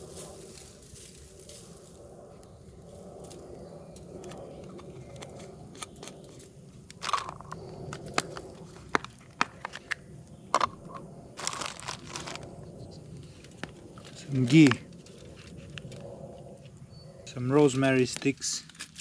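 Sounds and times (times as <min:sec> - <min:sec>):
aluminium foil crinkling: 0:11.4 - 0:12.5, 0:18.6 - 0:19.0.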